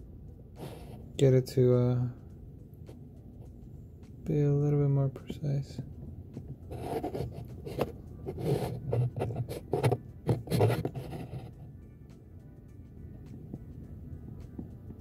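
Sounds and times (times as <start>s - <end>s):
scraping and rubbing handling noises: 6.7s - 11.6s.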